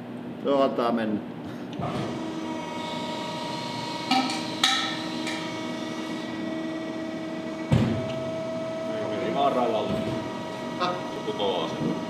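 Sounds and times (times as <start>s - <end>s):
hydraulic machine humming: 1.8s - 12.0s
sharp cracks of metal: 4.1s - 5.7s.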